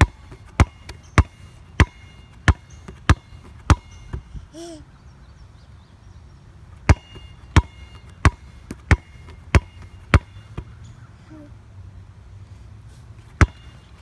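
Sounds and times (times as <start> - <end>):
basketball bouncing on hard floor: 0.0 - 4.2, 6.8 - 10.7, 13.4 - 13.6.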